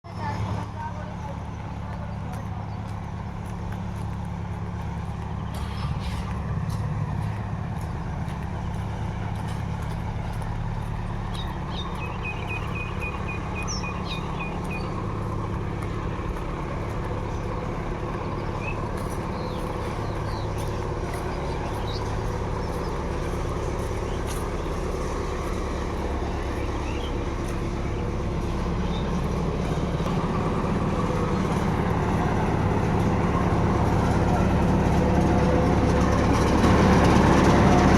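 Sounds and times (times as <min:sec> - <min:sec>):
road roller engine rumbling: 0:00.0 - 0:37.9.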